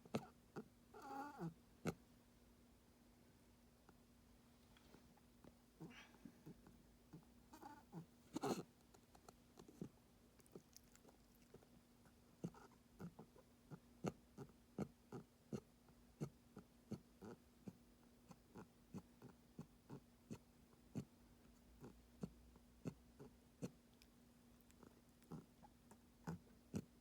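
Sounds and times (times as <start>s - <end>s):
pet coughing: 5.8s - 6.6s, 7.7s - 8.7s
soft wet clicks: 8.8s - 11.7s, 23.9s - 26.0s.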